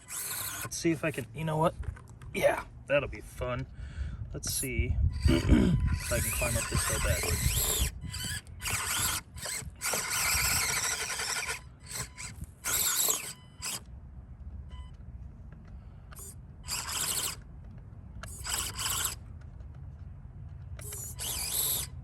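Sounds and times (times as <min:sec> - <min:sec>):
toy car motor whining: 0:00.0 - 0:01.2, 0:04.5 - 0:13.9, 0:16.2 - 0:17.4, 0:18.2 - 0:19.2, 0:20.8 - 0:22.0.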